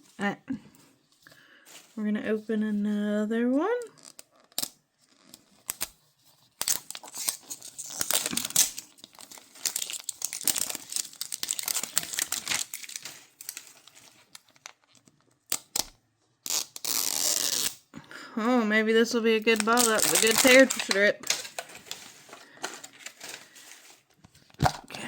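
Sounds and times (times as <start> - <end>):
plastic wrap crackling: 3.9 - 17.9, 19.3 - 25.0.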